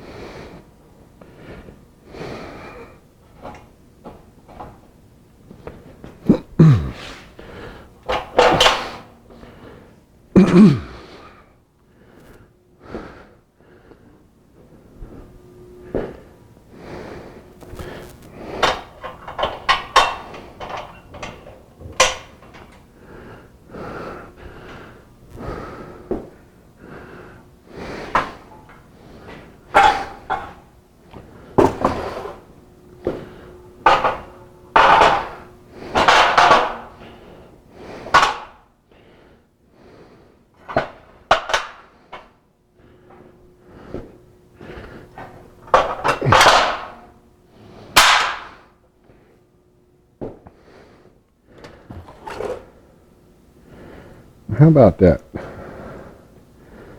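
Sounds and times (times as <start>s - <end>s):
scaffold parts knocking and clicking: 17.6s - 22.8s
scaffold parts scraping: 51.6s - 52.8s.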